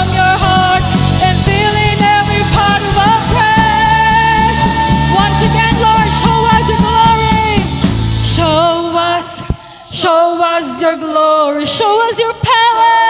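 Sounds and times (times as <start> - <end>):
rock band playing: 0.0 - 9.5
steady drum beat: 0.0 - 10.1
person singing lead: 0.0 - 13.0.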